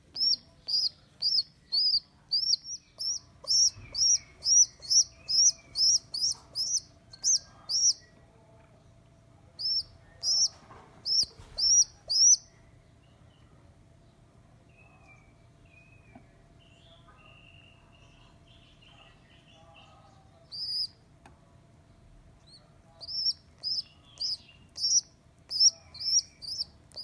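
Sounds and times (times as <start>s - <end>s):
baby pigeon squeaking: 0.0s - 8.1s, 9.6s - 12.5s, 20.5s - 21.0s, 22.4s - 27.0s.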